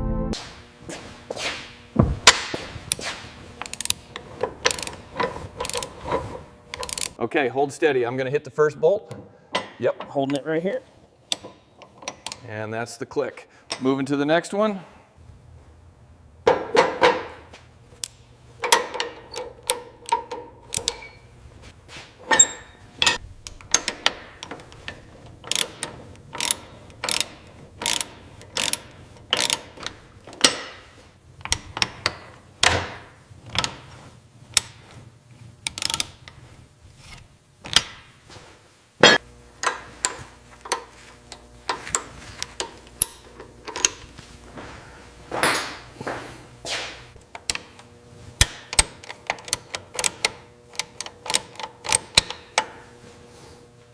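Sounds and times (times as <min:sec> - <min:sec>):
wrench clanking on bolts: 0:18.6 - 0:21.2, 0:22.2 - 0:33.8, 0:39.1 - 0:44.1, 0:48.4 - 0:52.8.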